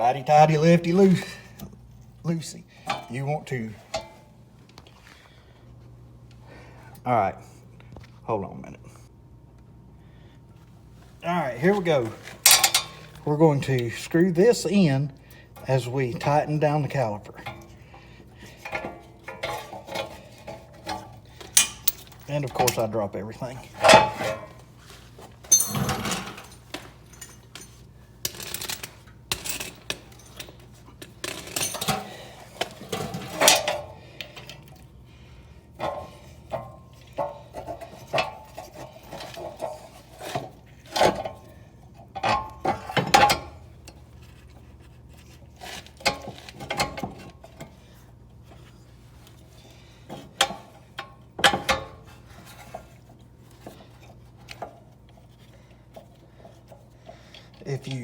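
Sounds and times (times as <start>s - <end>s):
metal tools clinking: 12.0s - 13.9s, 18.6s - 24.6s, 25.4s - 34.7s.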